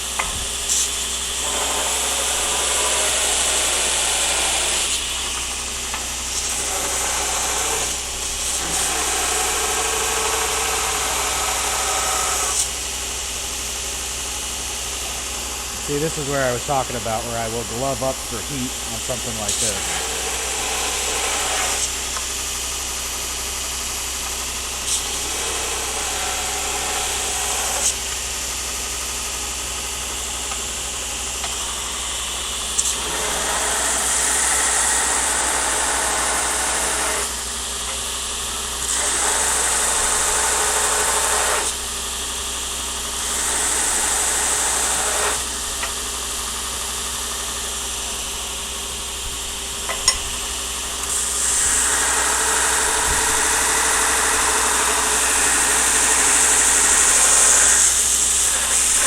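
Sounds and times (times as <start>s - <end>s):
workshop machine running: 0.0s - 59.0s
loud hissing: 15.6s - 20.0s.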